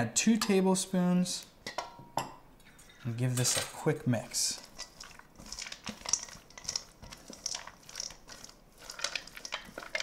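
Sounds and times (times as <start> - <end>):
utensil squishing and scraping salad: 4.2 - 10.0.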